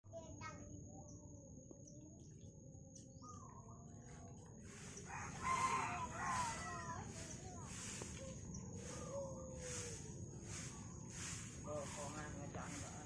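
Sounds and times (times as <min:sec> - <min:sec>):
rooster crowing: 0:04.8 - 0:07.2.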